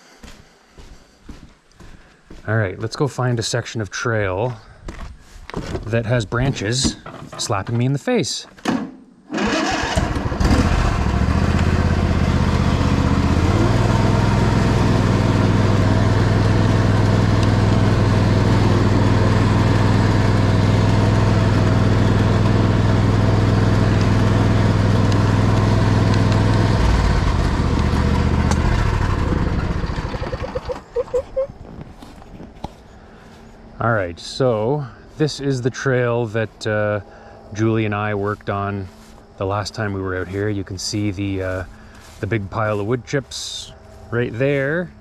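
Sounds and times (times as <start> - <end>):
lawn tractor engine running: 9.3 - 31.2, 37.6 - 45.0.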